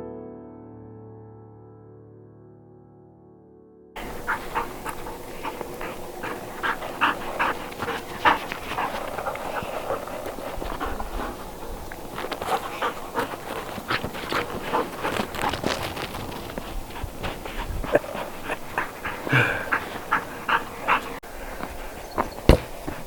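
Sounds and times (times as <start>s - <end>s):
dog panting: 4.0s - 23.0s.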